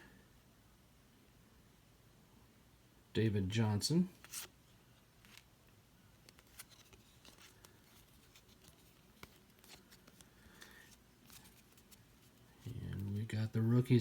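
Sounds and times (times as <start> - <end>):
trading cards rustling and clicking: 4.2 - 4.6, 6.2 - 13.4.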